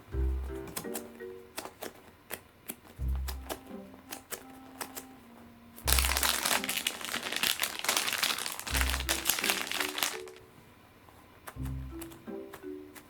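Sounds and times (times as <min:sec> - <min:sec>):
soft background music: 0:00.0 - 0:13.0
plastic packaging crinkling: 0:05.9 - 0:10.5.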